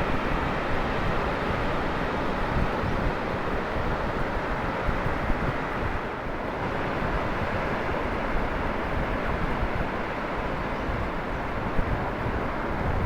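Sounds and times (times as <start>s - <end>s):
wind buffeting microphone: 8.4s - 13.0s.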